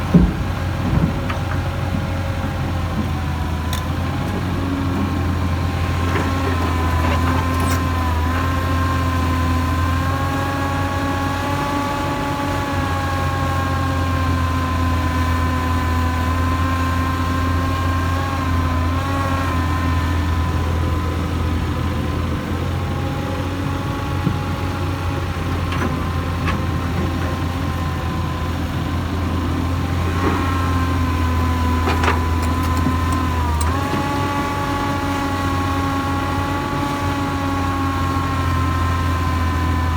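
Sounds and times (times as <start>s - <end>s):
hydraulic whine: 0.0s - 14.0s, 23.9s - 39.9s
excavator diesel engine running: 0.0s - 39.9s.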